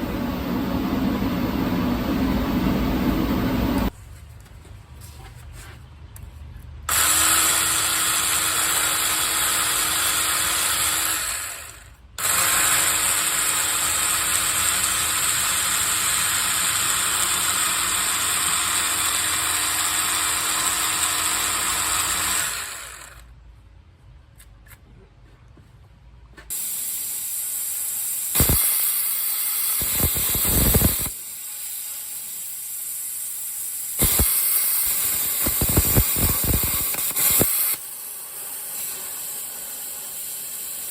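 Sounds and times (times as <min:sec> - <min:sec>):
plasma cutter hissing: 0:26.5 - 0:40.9.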